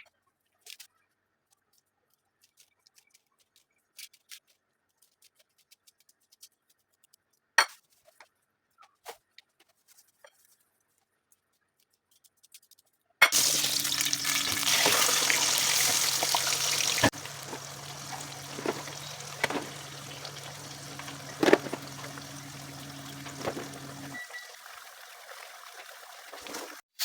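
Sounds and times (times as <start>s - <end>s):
loud steady hiss: 13.4s - 24.2s
quiet steady hum: 13.4s - 26.7s.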